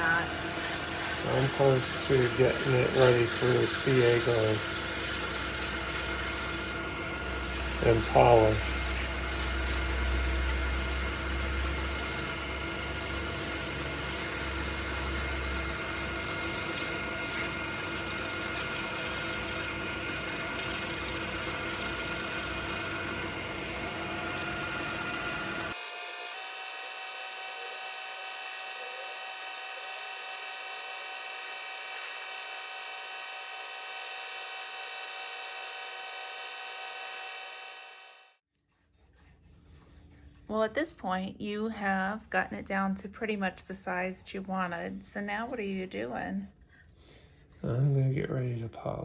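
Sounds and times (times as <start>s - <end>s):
lathe whining: 0.0s - 38.4s.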